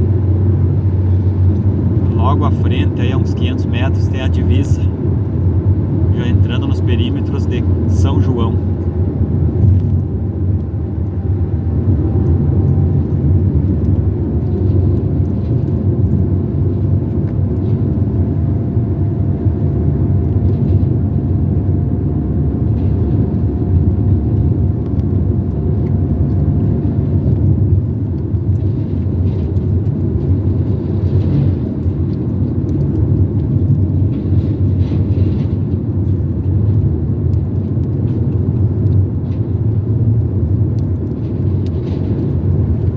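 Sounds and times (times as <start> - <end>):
faint whine: 0.0 - 16.8
car engine and tyre rumble: 0.0 - 42.9.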